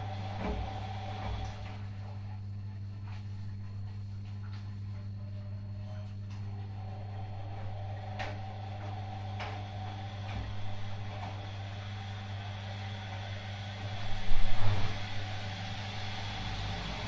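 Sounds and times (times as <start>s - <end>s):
washing machine motor hum: 0.0s - 17.0s
high whine: 5.2s - 17.0s.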